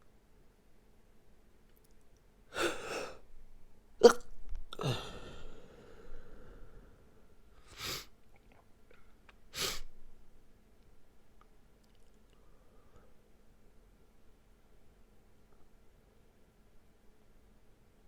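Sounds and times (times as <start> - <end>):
person stifling a sneeze: 2.6 - 3.2, 4.0 - 5.5, 9.6 - 9.9.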